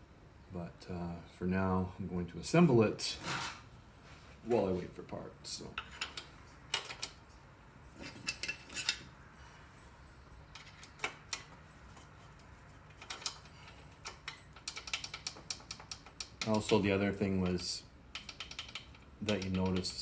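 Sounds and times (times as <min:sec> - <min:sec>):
metal engine parts clinking: 0:05.7 - 0:07.2, 0:08.0 - 0:09.1, 0:10.5 - 0:20.0.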